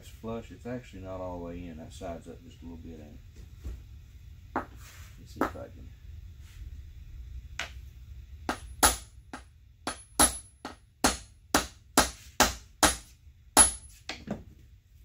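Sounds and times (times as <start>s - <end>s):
hammer striking metal: 8.5s - 14.0s.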